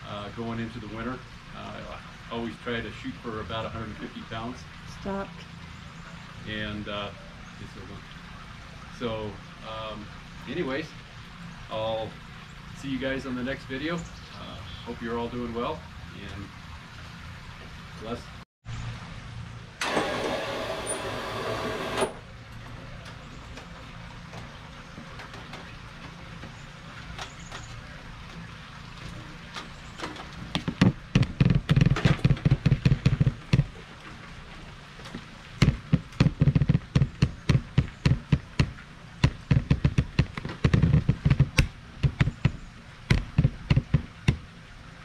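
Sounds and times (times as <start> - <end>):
rapid sharp knocks and taps: 30.6 - 33.7, 35.6 - 44.4.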